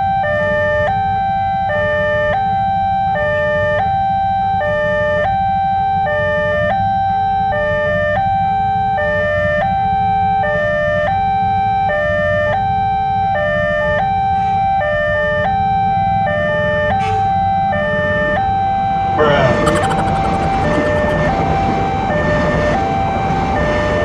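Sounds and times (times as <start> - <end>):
level crossing warning siren: 19.2 - 21.9.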